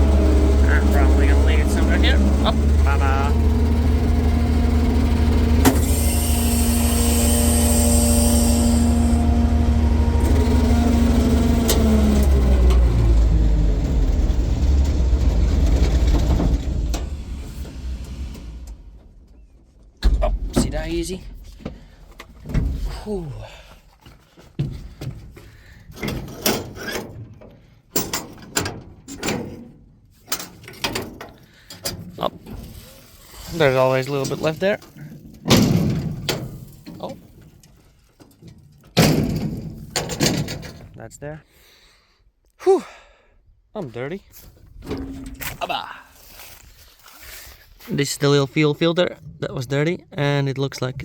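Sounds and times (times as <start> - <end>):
tractor engine running: 0.0 - 23.2
irregular knocks and bangs: 19.4 - 23.0.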